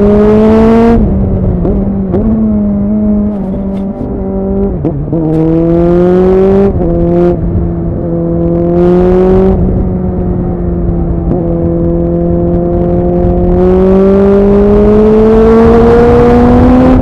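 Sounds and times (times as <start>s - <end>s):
motorcycle engine pulling under throttle: 1.6s - 7.2s.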